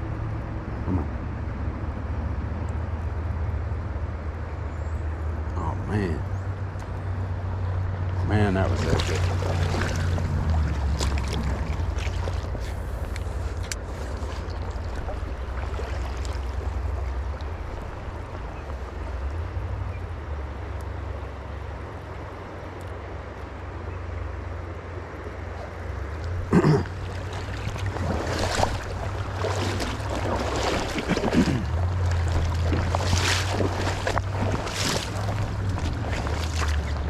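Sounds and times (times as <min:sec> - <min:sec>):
river water rushing: 0:03.2 - 0:37.0
wind buffeting microphone: 0:25.6 - 0:37.0.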